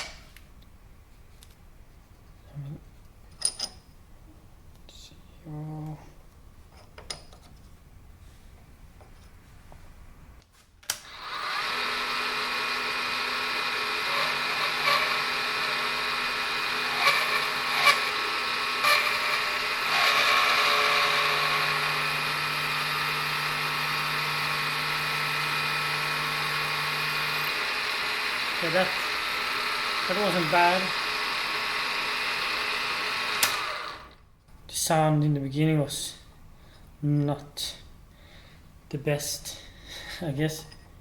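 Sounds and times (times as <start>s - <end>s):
milling spindle whine: 11.2s - 34.1s.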